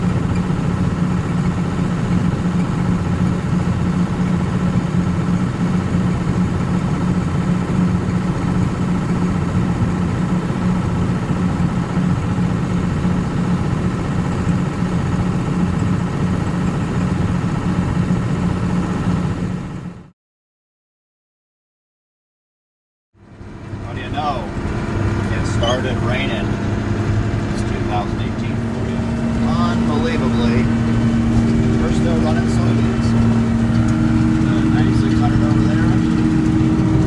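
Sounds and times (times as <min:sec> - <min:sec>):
vehicle engine humming: 0:00.0 - 0:20.1, 0:23.2 - 0:37.0
faint steady whine: 0:23.4 - 0:37.0.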